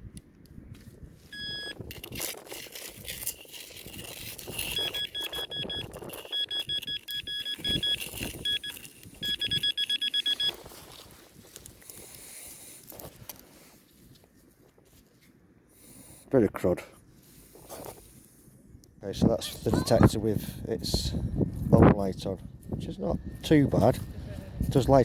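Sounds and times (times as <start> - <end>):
metal detector beeping: 1.3 - 11.2.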